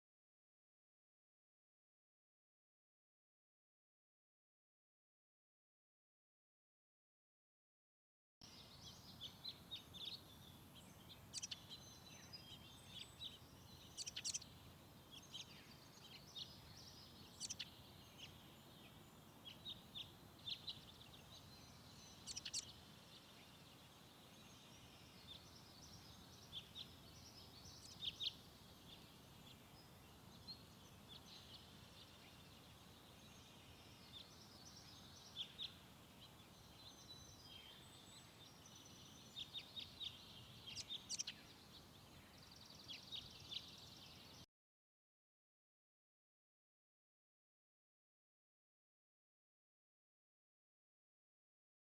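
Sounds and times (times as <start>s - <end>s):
faint steady hiss: 8.4s - 44.4s
small birds chirping: 8.4s - 44.5s.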